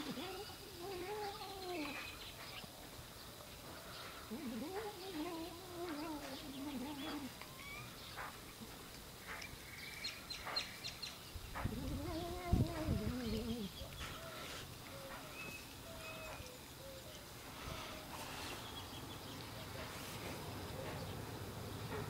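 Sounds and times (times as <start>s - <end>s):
cat wavering vocal noise: 11.7s - 13.7s.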